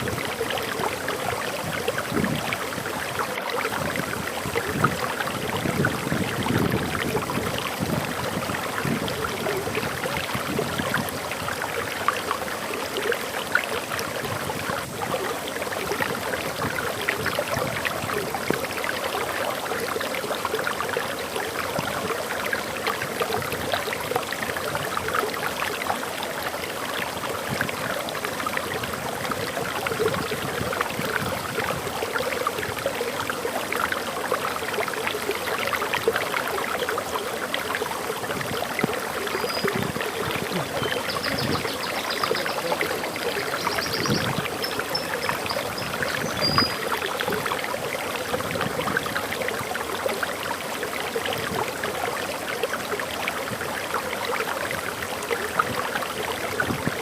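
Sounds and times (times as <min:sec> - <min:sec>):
small waterfall pouring and splashing: 0:00.0 - 0:57.0.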